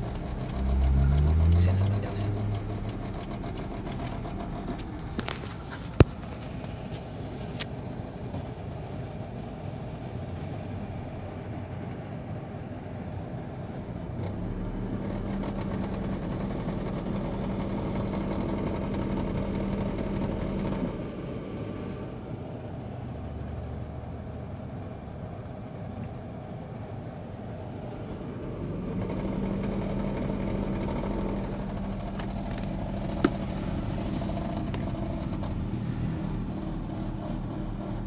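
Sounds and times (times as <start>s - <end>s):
sharp tick: 0.0s - 5.0s
car engine and road noise: 0.0s - 38.0s
steady engine hum: 0.0s - 38.0s.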